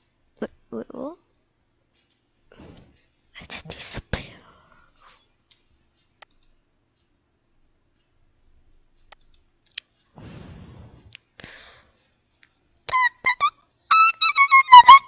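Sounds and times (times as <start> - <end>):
mouse clicks: 6.2 - 6.6, 9.0 - 9.9
high squeaky whistle tone: 12.9 - 15.0.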